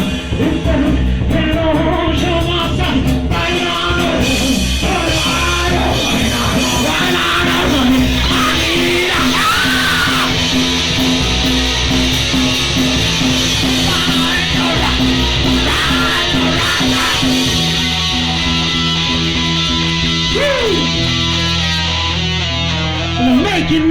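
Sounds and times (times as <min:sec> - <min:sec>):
distorted electric guitars: 0:00.0 - 0:23.9
punk rock band playing: 0:00.0 - 0:23.9
person yelling vocals: 0:01.6 - 0:10.4, 0:13.8 - 0:17.6, 0:20.3 - 0:21.0, 0:23.2 - 0:23.9.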